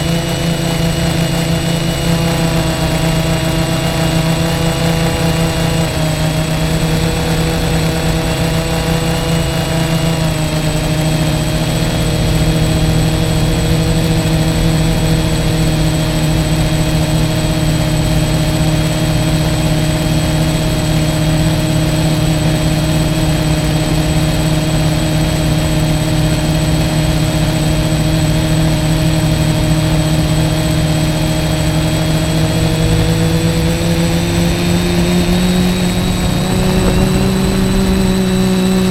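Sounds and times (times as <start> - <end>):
drone propellers humming: 0.0 - 38.9
rushing noise: 35.5 - 38.9.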